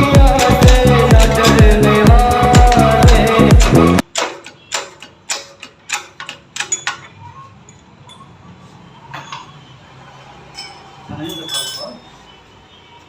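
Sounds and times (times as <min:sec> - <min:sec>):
background music: 0:00.0 - 0:04.1
metal tools tapping and clinking: 0:02.5 - 0:08.4, 0:09.1 - 0:09.6, 0:10.5 - 0:12.1.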